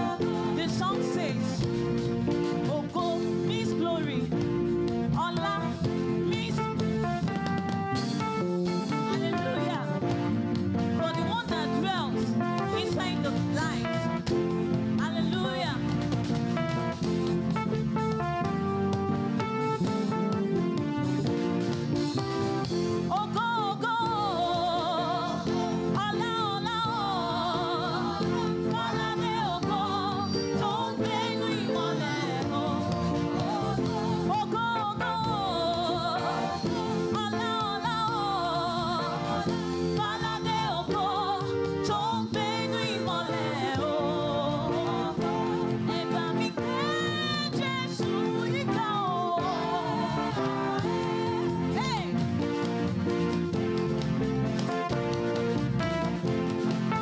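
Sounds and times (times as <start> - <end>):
sustained instrumental chords: 12.0 - 42.6
person singing with vibrato: 23.0 - 52.2.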